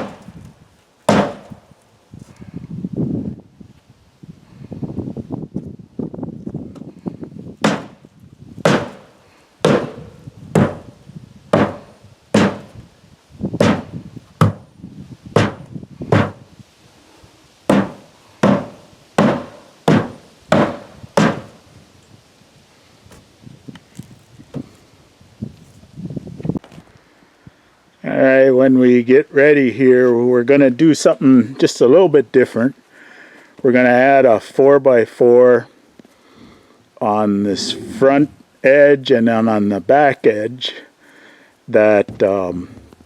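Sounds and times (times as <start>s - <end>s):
hammer striking wood: 0.0s - 0.2s, 1.1s - 1.6s, 7.6s - 8.0s, 8.6s - 10.9s, 11.5s - 12.8s, 13.6s - 14.7s, 15.4s - 16.4s, 17.7s - 21.6s.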